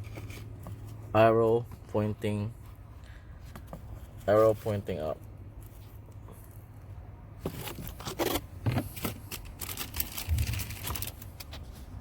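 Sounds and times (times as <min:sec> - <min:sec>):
plastic packaging crinkling and tearing: 0:09.0 - 0:11.6.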